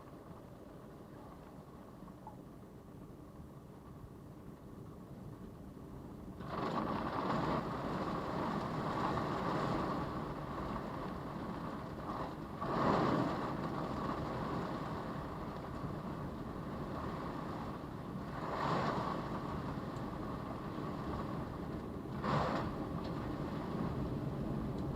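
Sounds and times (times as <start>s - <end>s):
storm wind gusting: 6.5s - 24.9s.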